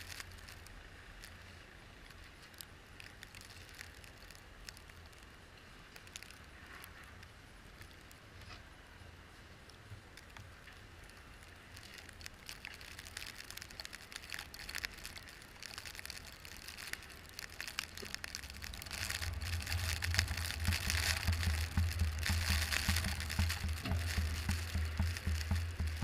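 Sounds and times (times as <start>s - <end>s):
tyres crackling through snow: 0.0s - 8.4s, 10.2s - 26.0s
low vehicle rumble: 15.4s - 26.0s.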